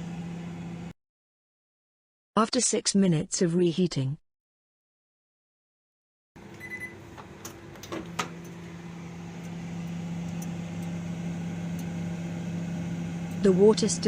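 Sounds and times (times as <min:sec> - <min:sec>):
microwave oven humming: 0:00.0 - 0:01.0, 0:06.4 - 0:14.0
microwave clicks: 0:06.4 - 0:12.3
microwave beep: 0:06.4 - 0:13.2.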